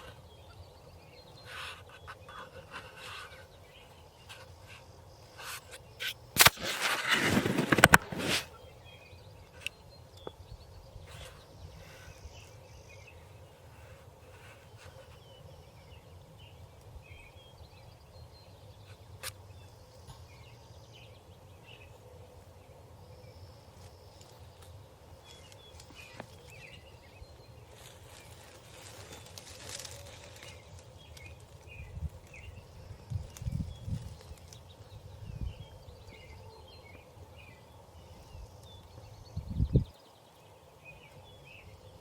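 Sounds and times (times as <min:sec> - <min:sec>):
faint bird calls: 0:00.0 - 0:06.2.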